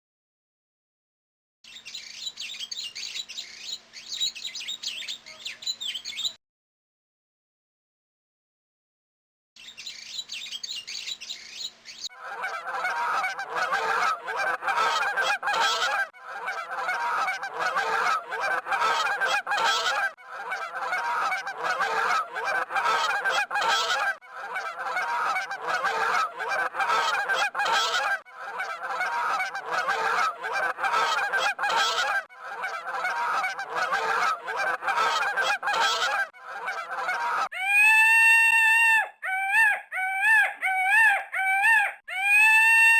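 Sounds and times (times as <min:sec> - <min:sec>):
rising and falling bird call: 0:09.6 - 0:42.9
flock of birds calling: 0:10.5 - 0:42.9.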